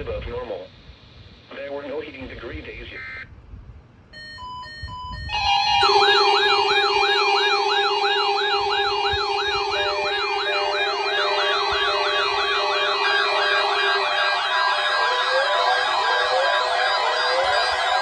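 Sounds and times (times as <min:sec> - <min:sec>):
short alarm beeps: 0:04.2 - 0:18.0
fast-yelping siren tones: 0:04.5 - 0:18.0
steady low tone: 0:05.2 - 0:18.0.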